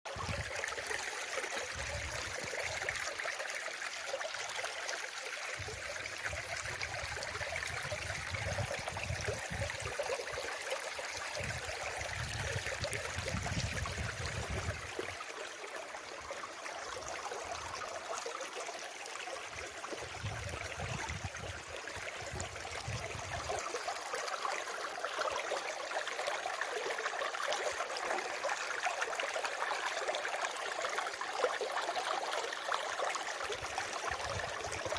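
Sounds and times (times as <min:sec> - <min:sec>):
running water rushing: 0:00.1 - 0:34.9.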